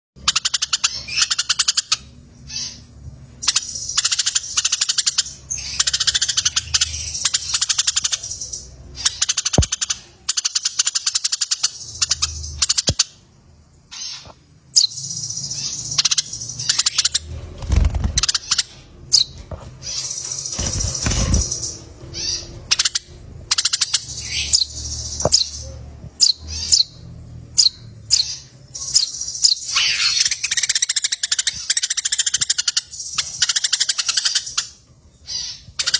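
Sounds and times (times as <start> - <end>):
sparrows chattering trills: 0.2 - 35.9.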